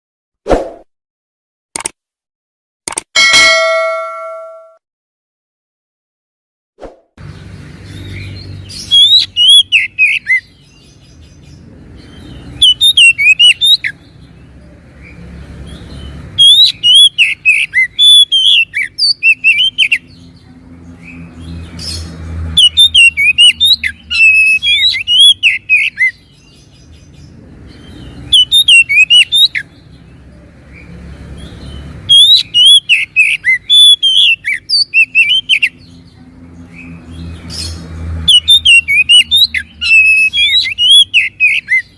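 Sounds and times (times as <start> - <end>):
bird singing whistled phrases: 12.6 - 14.0, 16.4 - 20.0, 28.3 - 29.6, 32.1 - 35.8, 38.3 - 41.9.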